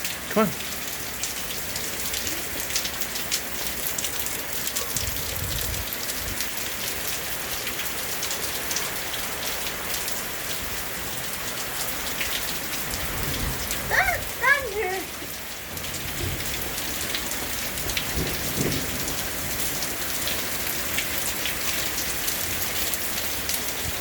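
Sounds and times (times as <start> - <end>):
rain falling: 0.0 - 24.0.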